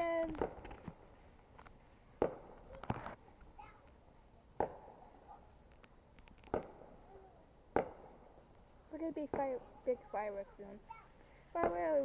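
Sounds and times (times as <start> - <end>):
fireworks bangs: 2.2 - 3.1, 11.6 - 12.0.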